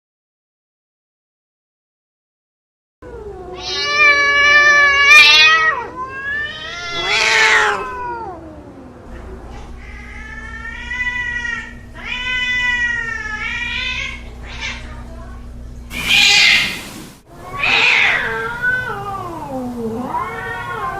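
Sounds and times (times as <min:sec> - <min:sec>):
cat yowling: 0:03.0 - 0:15.0, 0:15.9 - 0:16.8, 0:17.4 - 0:20.9.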